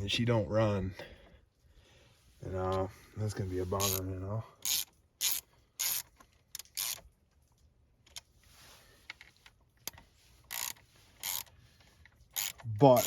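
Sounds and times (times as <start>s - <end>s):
ratchet clicks: 3.8s - 4.0s, 4.6s - 7.1s, 9.8s - 11.5s, 12.3s - 13.0s
ratchet wrench ratcheting: 3.8s - 7.1s, 9.8s - 11.5s, 12.1s - 13.0s.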